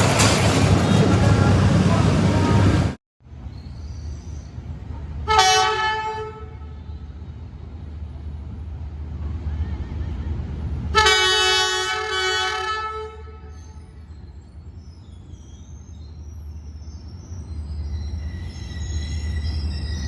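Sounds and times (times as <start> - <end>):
low engine rumble: 0.0 - 5.2
locomotive horn blasts: 5.3 - 6.8, 10.9 - 13.8.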